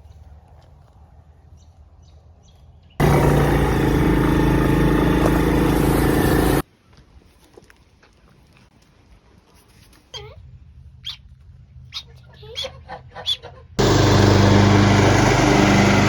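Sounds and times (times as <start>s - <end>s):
engine running loudly: 3.0s - 6.6s, 13.8s - 16.0s.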